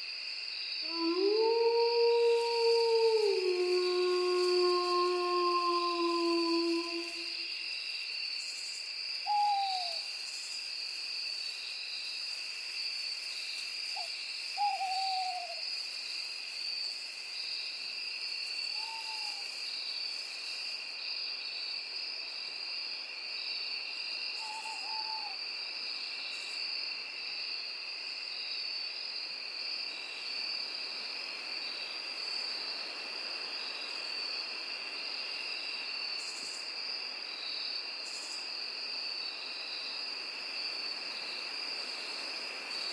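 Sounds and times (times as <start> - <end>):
night insects chirring: 0.0 - 42.9
owl hooting: 9.3 - 10.0, 14.6 - 15.6, 24.4 - 25.4.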